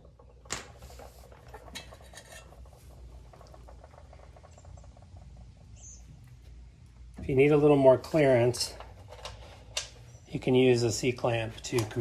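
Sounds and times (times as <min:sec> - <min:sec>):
metal scraping: 0:00.8 - 0:03.6.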